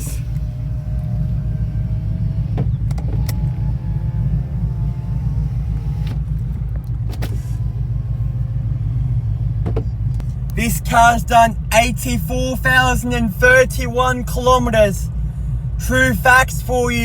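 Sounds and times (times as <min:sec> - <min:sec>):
car engine idling: 0:00.0 - 0:17.0
electric window motor whining: 0:00.2 - 0:10.0.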